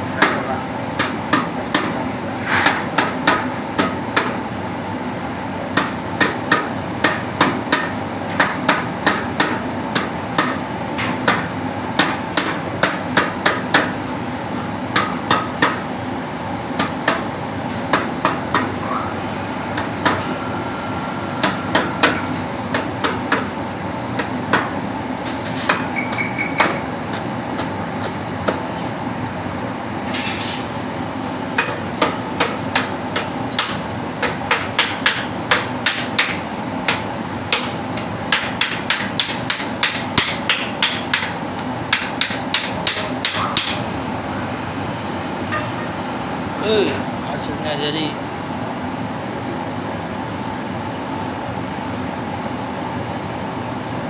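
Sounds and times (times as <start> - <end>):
steady background hum: 0.0 - 54.0
hammer striking metal: 0.2 - 4.4.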